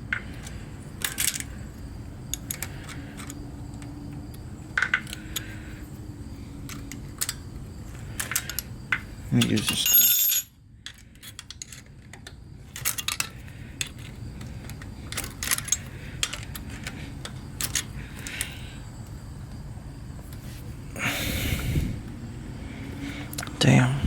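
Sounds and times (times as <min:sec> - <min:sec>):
hand tool clinking on metal: 0:09.4 - 0:10.5.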